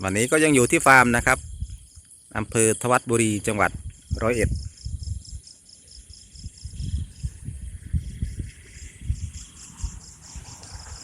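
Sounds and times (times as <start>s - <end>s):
crickets chirping: 0.0s - 11.0s.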